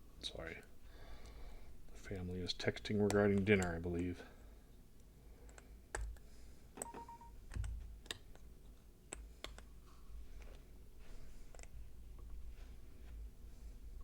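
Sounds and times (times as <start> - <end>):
light clicks and taps: 2.8 - 3.8
short electronic beep: 6.8 - 7.4.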